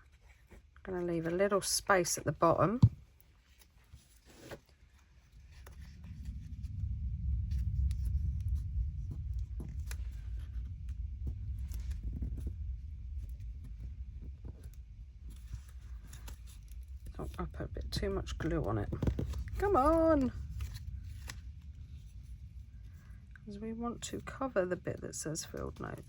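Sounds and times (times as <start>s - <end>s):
low rumble: 4.9s - 26.0s
paper rustling and tapping: 14.2s - 21.4s.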